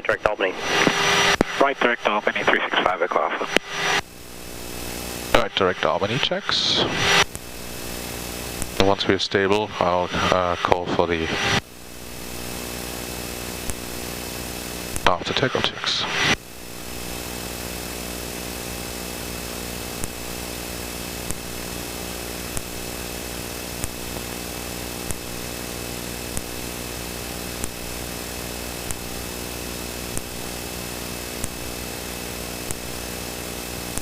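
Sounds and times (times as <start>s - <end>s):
jet engines and airflow hum: 0.0s - 12.2s
thin high whine: 0.0s - 34.0s.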